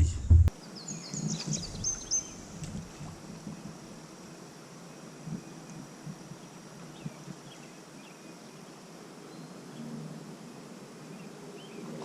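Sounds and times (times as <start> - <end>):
faint bird chirps: 0.6 - 2.6
river hiss: 0.6 - 12.0.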